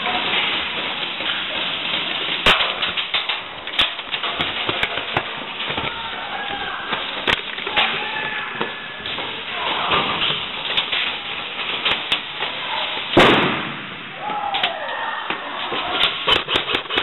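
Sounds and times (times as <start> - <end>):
pellets striking surfaces: 0.0 - 17.0
steady hiss: 0.0 - 17.0
airsoft guns firing: 13.1 - 14.7.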